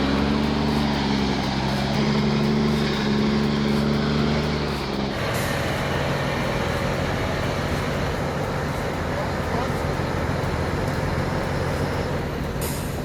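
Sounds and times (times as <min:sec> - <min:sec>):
heavy vehicle engine running: 0:00.0 - 0:13.0.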